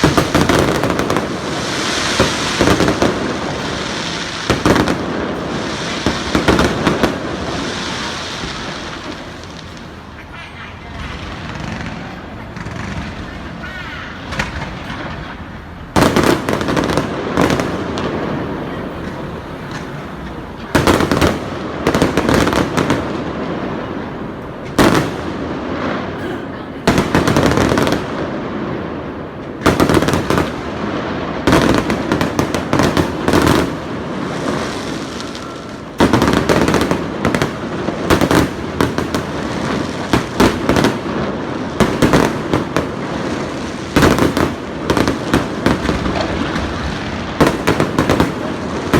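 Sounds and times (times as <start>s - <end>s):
firework shells bursting with bangs: 0.0s - 48.9s.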